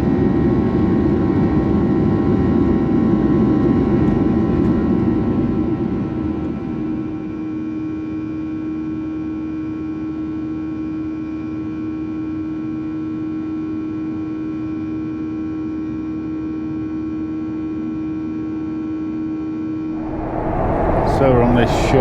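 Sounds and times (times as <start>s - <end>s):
airplane cabin drone: 19.9s - 22.0s.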